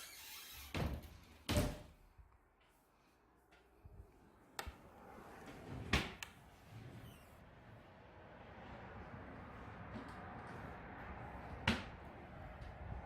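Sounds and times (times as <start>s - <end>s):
doors or cupboards opening and shutting: 0.0s - 2.0s, 5.5s - 7.4s.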